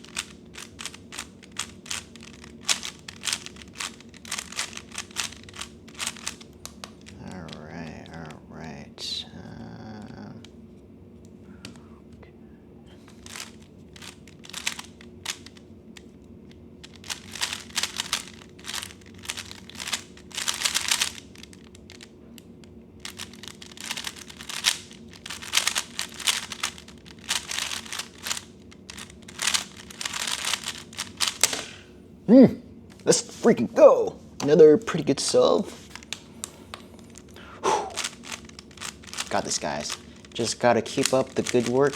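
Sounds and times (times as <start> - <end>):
puzzle cube plastic clicks: 0.0 - 8.4, 13.1 - 31.6, 37.0 - 41.9.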